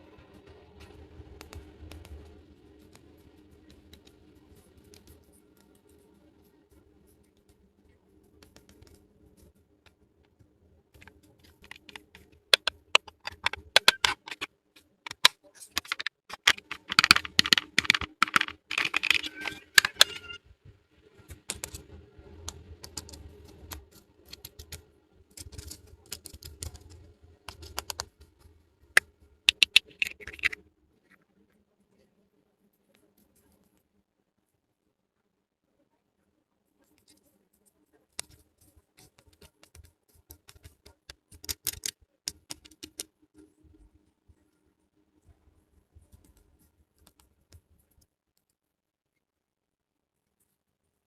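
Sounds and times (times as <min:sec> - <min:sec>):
plastic toy pieces clicking: 0:11.6 - 0:14.5, 0:15.1 - 0:20.3, 0:25.4 - 0:26.9, 0:27.5 - 0:28.1, 0:29.5 - 0:30.6, 0:39.7 - 0:43.1.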